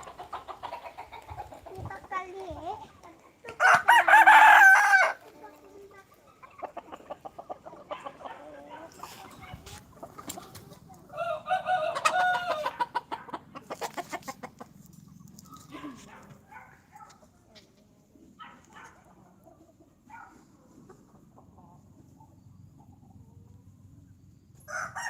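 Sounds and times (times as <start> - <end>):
hens clucking: 0.0 - 24.0
rooster crowing: 3.6 - 5.2, 11.2 - 12.7, 24.7 - 25.0.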